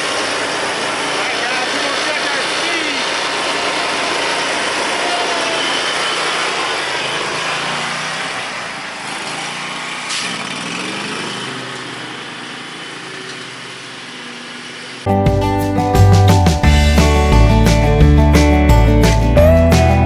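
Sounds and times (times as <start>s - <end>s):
mower engine running: 0.0s - 15.1s
background music: 15.1s - 20.0s.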